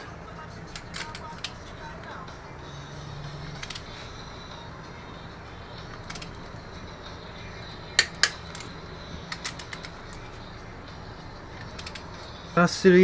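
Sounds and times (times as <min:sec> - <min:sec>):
ratchet clicking: 0:00.7 - 0:01.6, 0:03.5 - 0:04.0, 0:05.8 - 0:06.7, 0:07.9 - 0:10.2, 0:11.6 - 0:12.2
torque wrench sharp clicks: 0:11.6 - 0:12.1.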